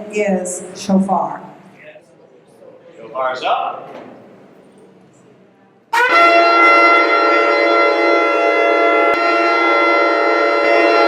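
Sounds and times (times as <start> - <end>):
shofar blast: 5.9 - 11.0.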